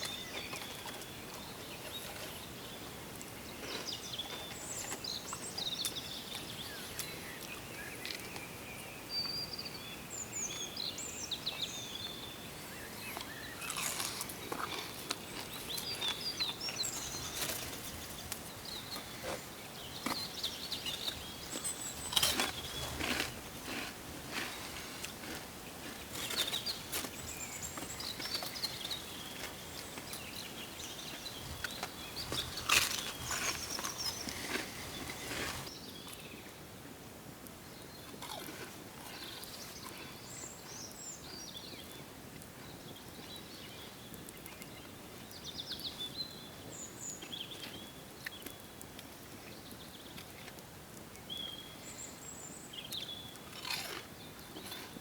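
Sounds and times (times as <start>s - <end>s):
crunching and clicking noises: 0.0s - 2.4s, 3.1s - 8.5s, 13.0s - 36.6s, 37.4s - 40.8s, 47.2s - 51.3s, 52.8s - 55.0s
small birds chirping: 0.0s - 36.6s, 37.6s - 55.0s.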